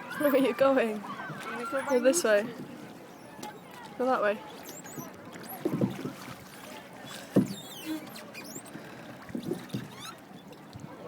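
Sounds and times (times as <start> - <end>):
oars working in water: 0.0 - 11.0
soft thuds: 7.2 - 8.0.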